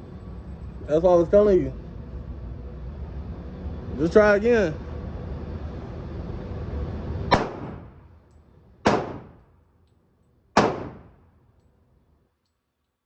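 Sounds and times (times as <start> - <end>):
handgun gunshots: 7.3 - 7.9, 8.9 - 9.4, 10.6 - 11.2.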